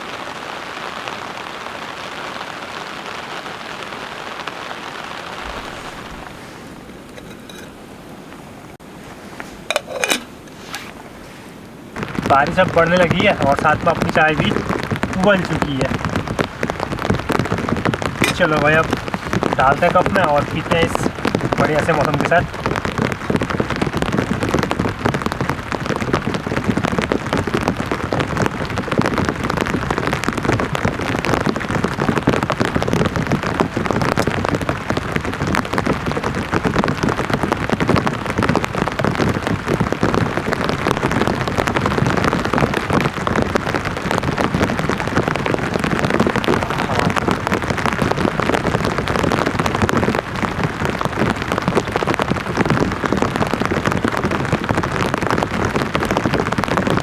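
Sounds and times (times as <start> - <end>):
heavy rain on a tarp: 0.0 - 57.0.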